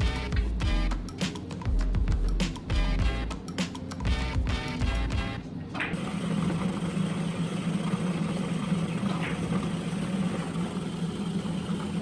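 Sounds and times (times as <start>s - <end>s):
motor humming: 6.0s - 12.0s.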